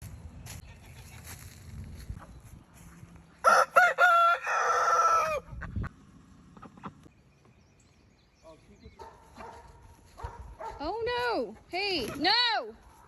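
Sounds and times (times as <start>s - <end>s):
rooster crowing: 3.4s - 5.5s.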